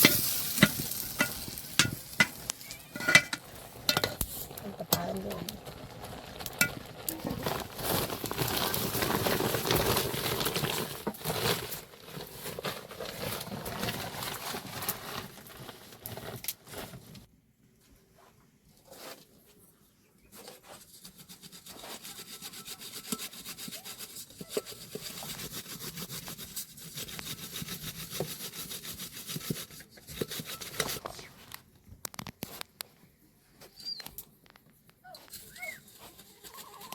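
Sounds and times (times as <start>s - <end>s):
scraping rubbing strokes: 0.0s - 15.2s, 20.3s - 31.4s.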